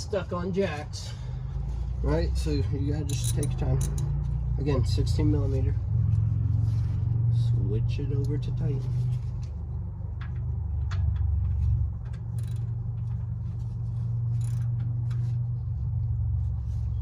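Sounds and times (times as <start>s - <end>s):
ratchet wrench clicking: 3.0s - 4.2s, 12.0s - 13.2s, 14.3s - 15.2s.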